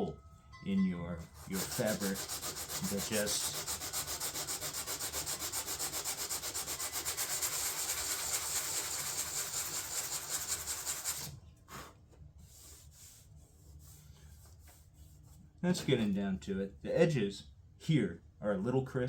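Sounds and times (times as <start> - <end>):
sandpaper rasping on fiberglass: 1.2 - 15.4.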